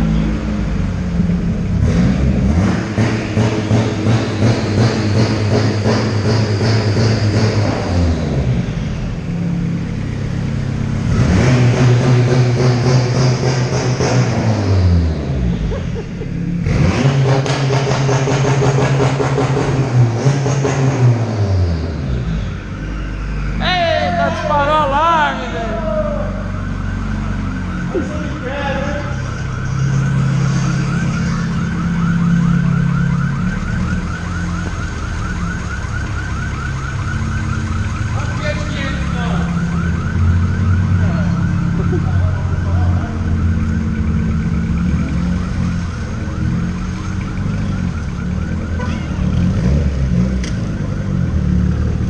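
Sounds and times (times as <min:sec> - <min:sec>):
car engine revving: 0:00.0 - 0:52.0
electronic siren yelp: 0:22.6 - 0:49.7.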